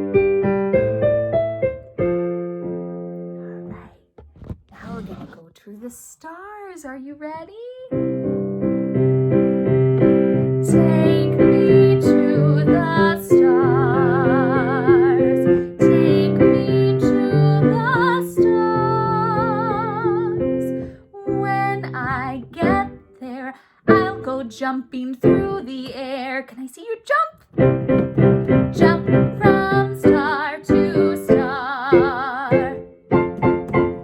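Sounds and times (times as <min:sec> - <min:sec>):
piano chords: 0:00.0 - 0:03.7, 0:07.9 - 0:23.2, 0:23.9 - 0:24.5, 0:25.2 - 0:25.8, 0:27.5 - 0:34.0
woman singing with vibrato: 0:10.6 - 0:27.4, 0:28.7 - 0:32.9.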